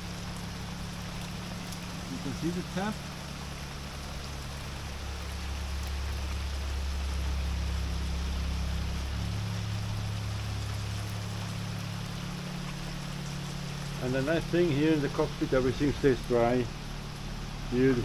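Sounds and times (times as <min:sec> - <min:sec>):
low hum: 0:00.0 - 0:18.0
rain falling: 0:00.0 - 0:18.0.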